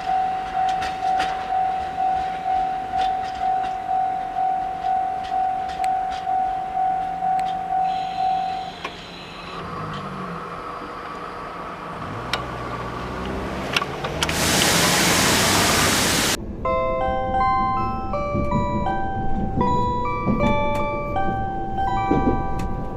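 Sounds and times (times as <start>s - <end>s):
train wheel clicks: 0.0s - 8.0s, 18.2s - 22.9s
level crossing bell ringing: 0.0s - 9.3s, 16.5s - 22.9s
diesel railcar engines: 0.0s - 22.9s
loud rushing hiss: 14.3s - 16.4s
mallet percussion tune: 16.6s - 22.9s.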